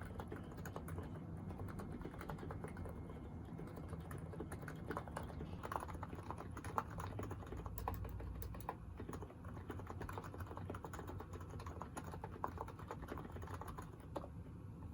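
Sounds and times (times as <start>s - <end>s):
soft keyboard typing: 0.0s - 14.4s.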